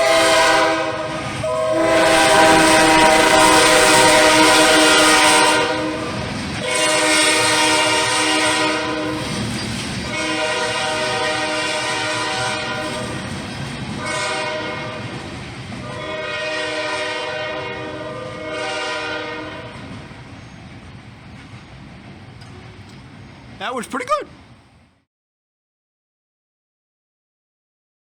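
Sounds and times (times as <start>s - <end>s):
locomotive air horn blasts: 0.0s - 9.3s, 10.1s - 13.2s, 14.0s - 15.0s, 15.9s - 19.7s
passing train rumble: 0.0s - 24.9s.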